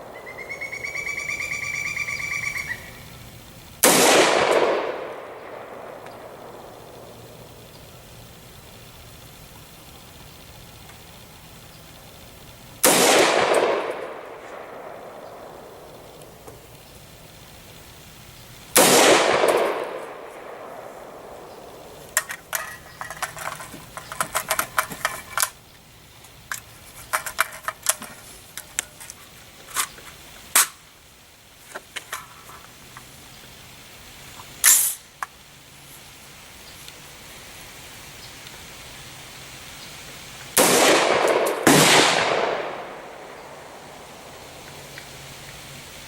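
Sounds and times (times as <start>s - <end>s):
gunshots echoing: 3.8s - 7.6s, 12.8s - 16.4s, 18.8s - 22.1s, 40.6s - 44.5s
sharp clicks and clatter: 22.0s - 25.6s, 26.5s - 30.8s.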